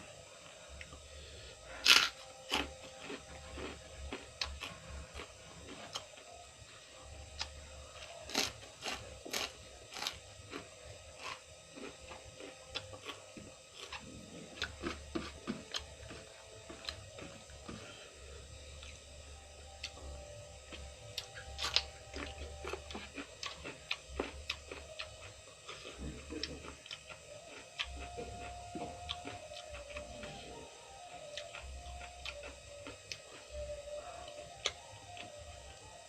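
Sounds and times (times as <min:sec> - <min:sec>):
faint steady hum: 0:00.0 - 0:36.0
crunchy chewing of cucumber: 0:01.6 - 0:06.3, 0:07.3 - 0:17.9, 0:19.7 - 0:35.4.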